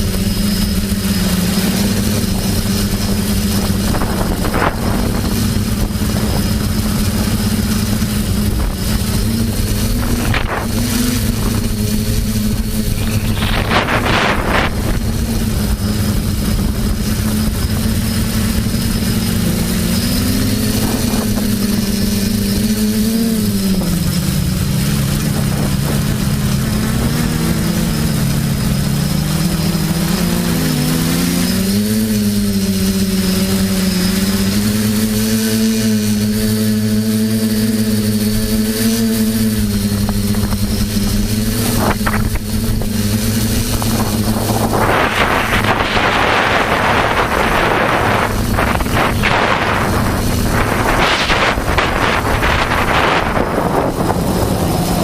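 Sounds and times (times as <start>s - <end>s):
quadcopter motors buzzing: 0.0s - 55.0s
brief rush of noise: 12.9s - 14.9s.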